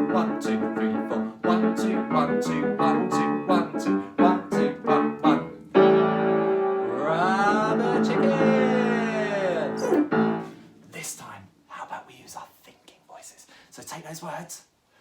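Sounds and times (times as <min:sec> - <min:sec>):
piano chords: 0:00.0 - 0:10.6
voice sliding in pitch: 0:06.9 - 0:10.1.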